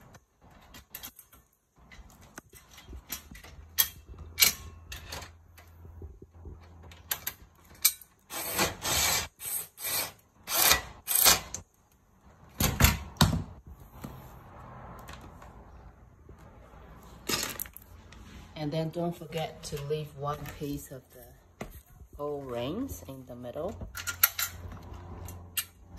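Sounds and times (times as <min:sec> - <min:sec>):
clicks and knocks of metal parts: 0:00.0 - 0:08.3, 0:23.7 - 0:25.9.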